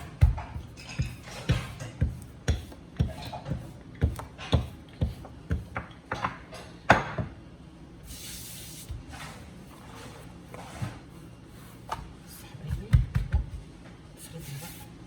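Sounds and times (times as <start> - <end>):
rolling pin knocking on board: 0.0 - 7.3, 12.7 - 13.6.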